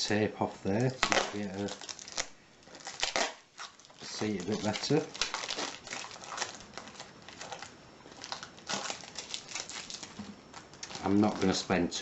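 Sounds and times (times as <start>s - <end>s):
adhesive tape peeling: 0.7s - 11.6s.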